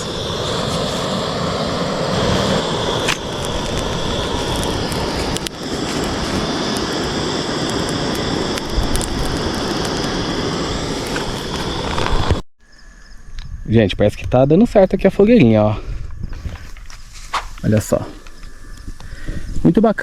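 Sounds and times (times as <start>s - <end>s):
steady rushing noise: 0.0s - 12.4s
wood fire crackling and popping: 0.0s - 12.4s.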